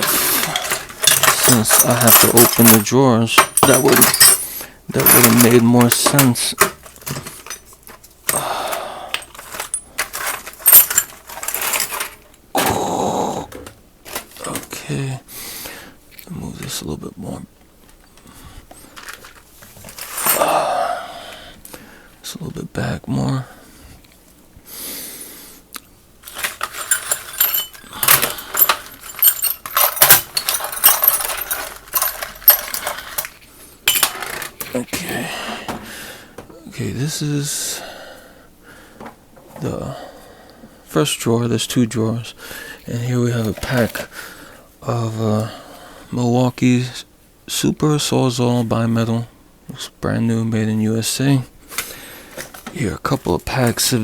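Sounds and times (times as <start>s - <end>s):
metal tools clinking and rattling: 0.0s - 12.4s, 13.6s - 14.9s, 18.9s - 20.8s, 26.2s - 35.8s, 42.9s - 44.1s.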